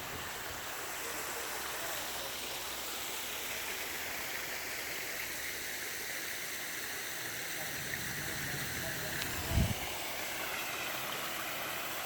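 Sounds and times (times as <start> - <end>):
water splashing in a pond: 0.0 - 12.0.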